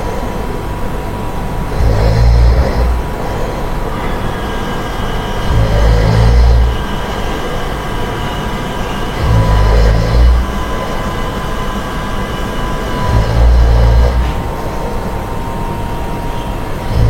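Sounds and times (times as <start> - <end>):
steady hum: 0.0 - 17.0
person snoring: 1.6 - 4.8, 5.4 - 7.7, 9.1 - 11.6, 12.9 - 14.4, 16.8 - 17.0.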